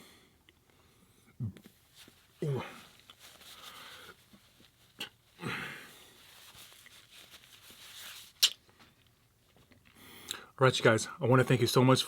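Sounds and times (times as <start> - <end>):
person breathing and mouth sounds: 0.0 - 7.4, 9.7 - 10.5.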